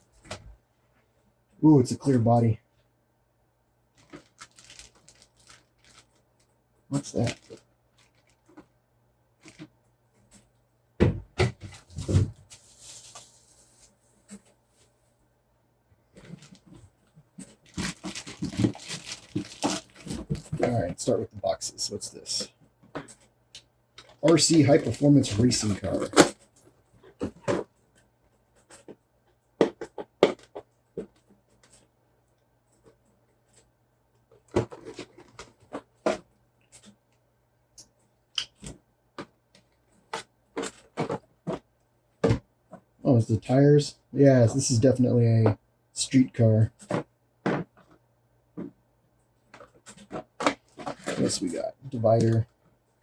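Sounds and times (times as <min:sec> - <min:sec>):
packaging rustling: 0:04.0 - 0:06.2, 0:06.9 - 0:08.6, 0:12.4 - 0:14.9, 0:17.4 - 0:20.9.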